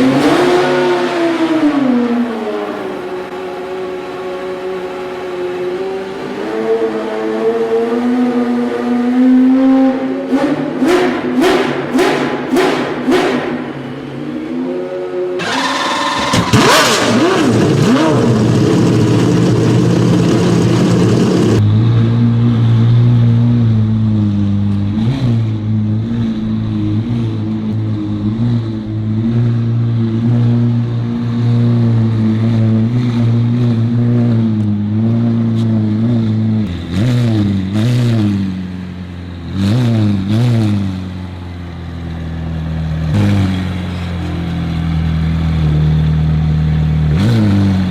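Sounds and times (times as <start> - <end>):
car engine revving and idling: 0.0 - 47.9.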